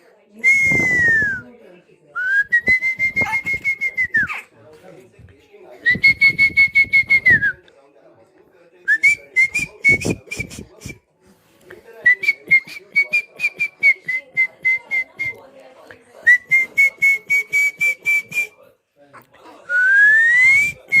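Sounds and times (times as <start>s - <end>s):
person whistling: 2.2s - 4.3s.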